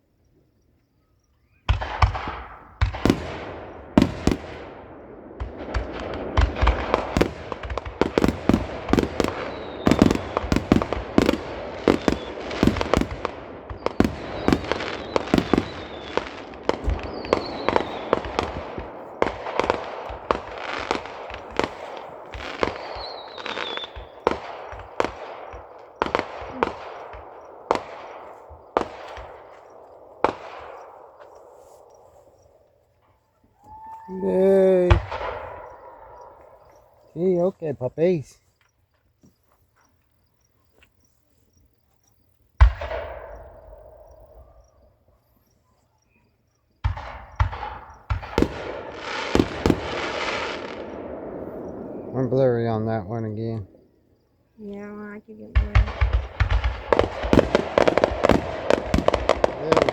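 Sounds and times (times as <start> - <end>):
fireworks booms and bangs: 1.6 - 32.4, 33.7 - 38.3, 42.6 - 44.7, 46.7 - 54.0, 54.7 - 59.9
echoing rumble: 1.8 - 31.4, 34.8 - 37.2, 47.0 - 54.2
faint firework whistles: 5.4 - 37.5, 40.6 - 54.6, 55.7 - 59.9.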